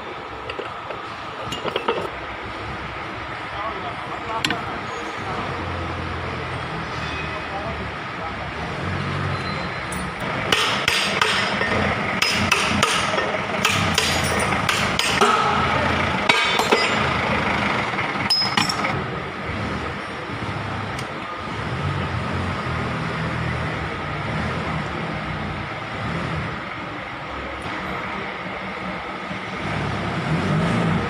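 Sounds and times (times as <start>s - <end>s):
hammer striking metal: 9.9s - 17.3s, 18.2s - 19.0s.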